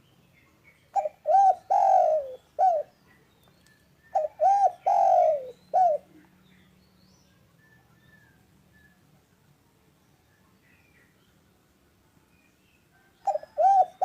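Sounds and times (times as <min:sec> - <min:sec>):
dove cooing: 0:00.9 - 0:03.0, 0:04.1 - 0:06.3, 0:13.2 - 0:14.0.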